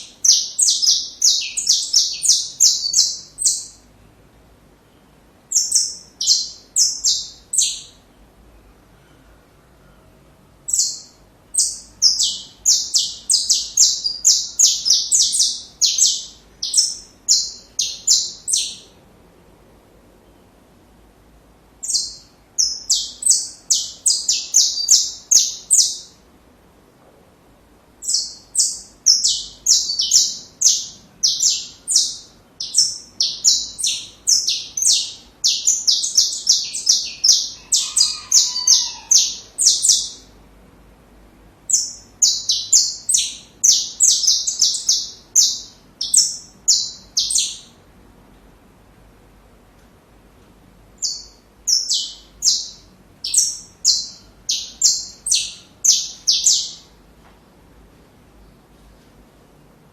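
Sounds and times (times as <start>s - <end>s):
finch singing: 0.0s - 3.9s, 5.5s - 8.0s, 10.6s - 19.0s, 21.8s - 26.2s, 28.0s - 40.3s, 41.7s - 47.8s, 51.0s - 57.0s.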